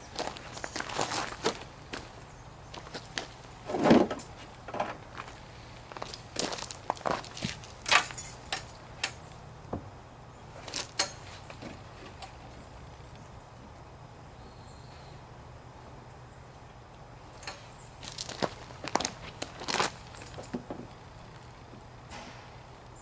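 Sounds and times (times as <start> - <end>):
parts knocking and clattering: 3.6 - 5.4, 6.0 - 10.0, 17.4 - 22.7.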